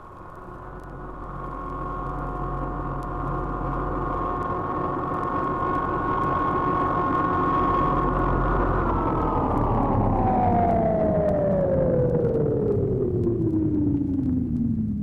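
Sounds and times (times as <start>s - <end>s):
low rumble: 7.6s - 15.0s.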